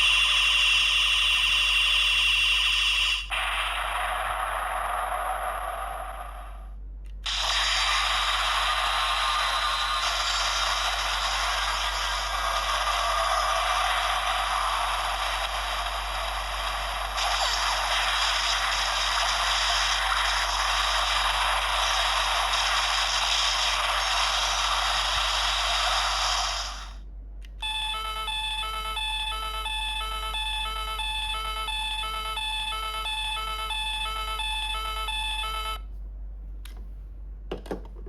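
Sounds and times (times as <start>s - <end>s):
toy electronic beeping: 0.0s - 3.4s, 27.6s - 35.8s
toy hissing energy effect: 0.0s - 27.0s.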